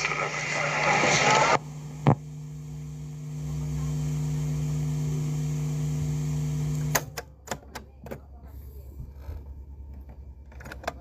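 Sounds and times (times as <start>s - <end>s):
buzzy mains hum: 0.0s - 7.0s.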